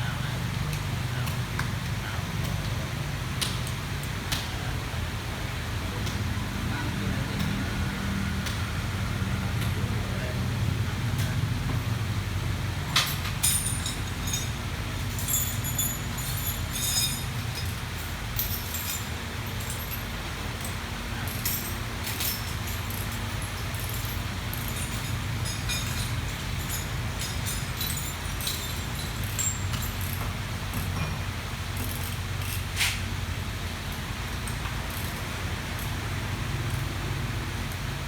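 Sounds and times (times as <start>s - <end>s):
metallic tool clinks: 12.9s - 31.1s.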